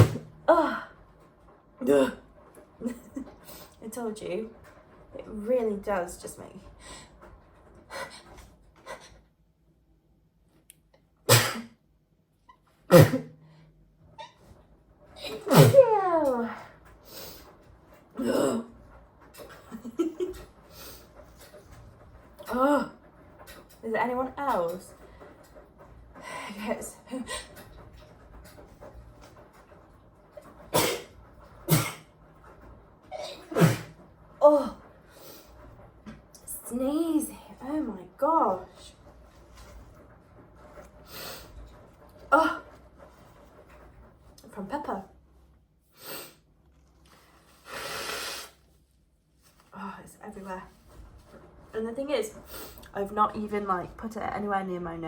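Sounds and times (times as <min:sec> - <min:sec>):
woman sneezing: 0:11.3 - 0:11.8, 0:12.9 - 0:13.4, 0:15.3 - 0:16.0, 0:33.2 - 0:33.9.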